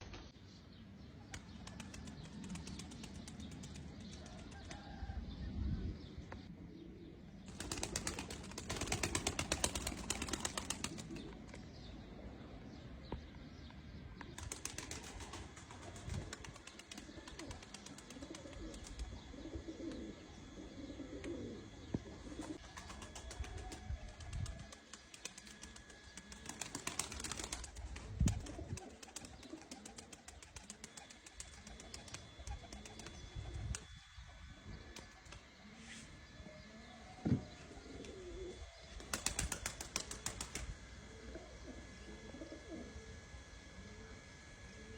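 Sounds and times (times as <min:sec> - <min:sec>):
wings flapping: 0:01.3 - 0:05.0, 0:07.5 - 0:11.4, 0:14.4 - 0:19.1, 0:22.4 - 0:34.0, 0:39.0 - 0:40.8
pigeons cooing: 0:06.7 - 0:11.6, 0:14.4 - 0:35.7, 0:36.3 - 0:44.9.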